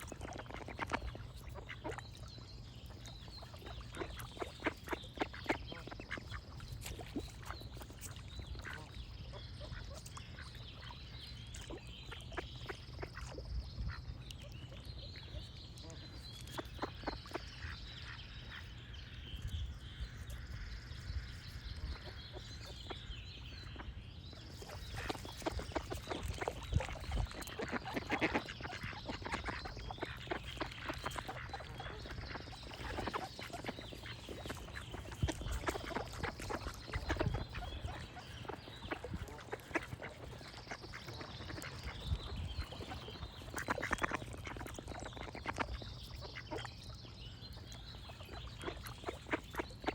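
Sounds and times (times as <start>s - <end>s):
birds singing: 0.0s - 49.9s
ducks quacking: 24.7s - 46.7s.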